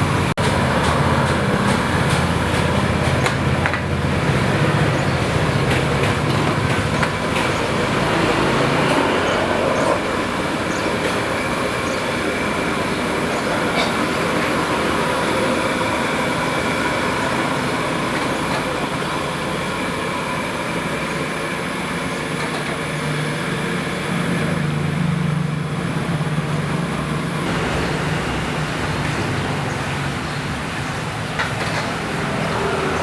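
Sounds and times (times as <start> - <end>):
street traffic noise: 0.0 - 33.0
vehicle engine low drone: 22.5 - 33.0.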